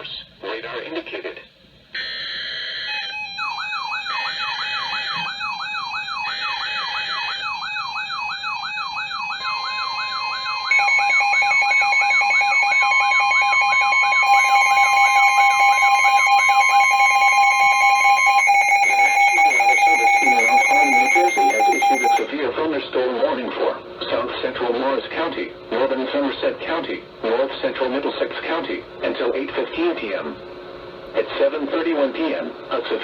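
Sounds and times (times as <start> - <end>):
warbling siren alarm: 2.0 - 22.3
steady alert tones: 3.2 - 22.3.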